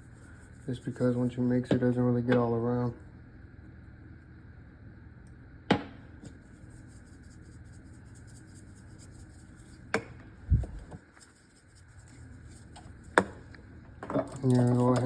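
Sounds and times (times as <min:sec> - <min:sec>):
utensil stirring thick dip: 0:00.0 - 0:01.7, 0:06.3 - 0:10.0, 0:11.0 - 0:13.6.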